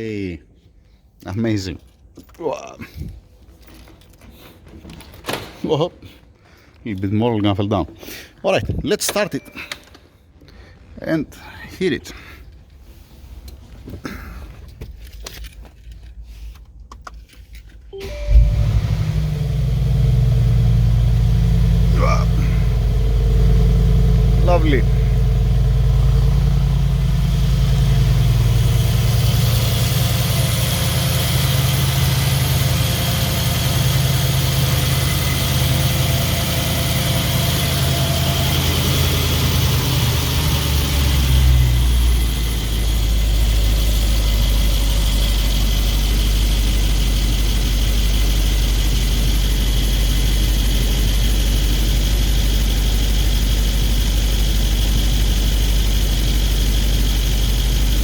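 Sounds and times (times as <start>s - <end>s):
car engine idling: 18.0s - 58.0s.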